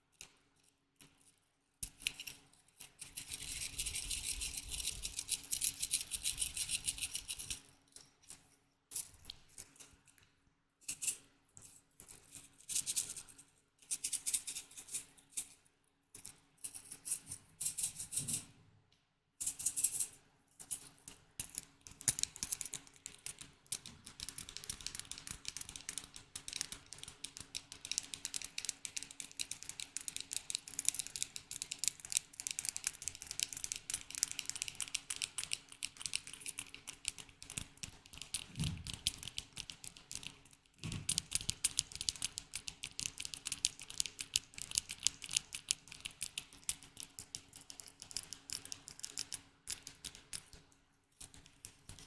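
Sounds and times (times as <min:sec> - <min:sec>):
tapping and scratching on objects: 0:19.4 - 0:52.0.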